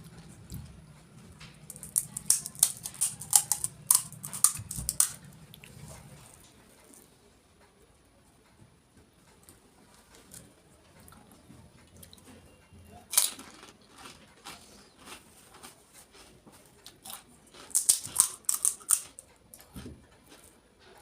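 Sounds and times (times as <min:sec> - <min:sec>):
crunching crisp shells: 0:01.5 - 0:05.7, 0:13.1 - 0:20.5.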